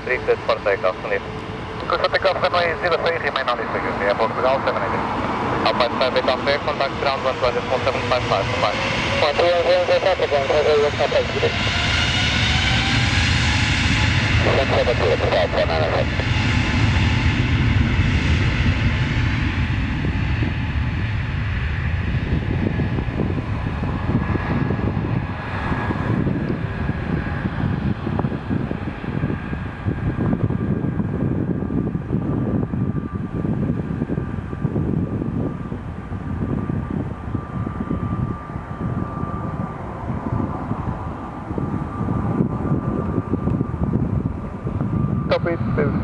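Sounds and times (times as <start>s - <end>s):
jet engines at takeoff: 0.0s - 46.0s.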